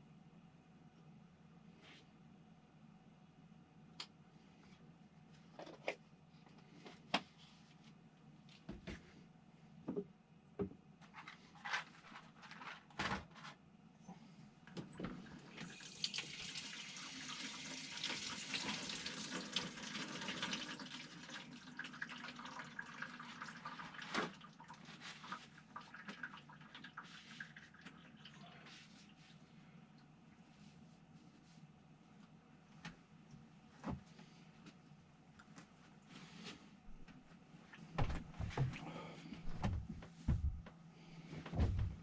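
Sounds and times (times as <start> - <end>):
water running: 15.4 - 29.1.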